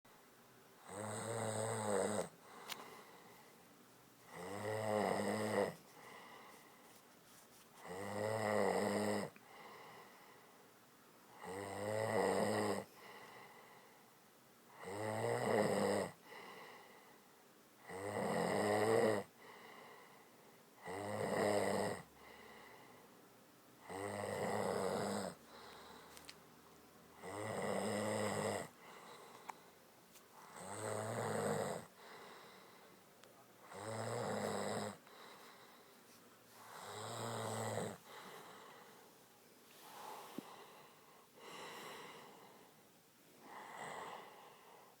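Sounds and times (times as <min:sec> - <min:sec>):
woman snoring loudly: 0:00.8 - 0:02.4, 0:04.3 - 0:05.8, 0:07.8 - 0:09.6, 0:11.3 - 0:12.9, 0:14.7 - 0:16.2, 0:17.8 - 0:19.3, 0:20.8 - 0:22.1, 0:23.8 - 0:25.4, 0:27.2 - 0:28.8, 0:30.4 - 0:31.9, 0:33.6 - 0:35.0, 0:36.7 - 0:38.1.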